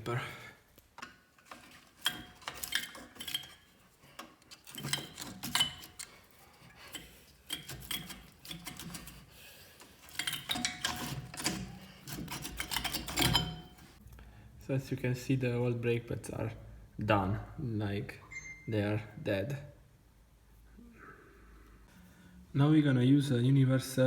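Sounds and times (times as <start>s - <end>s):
metallic clinks and scrapes: 1.0s - 14.0s.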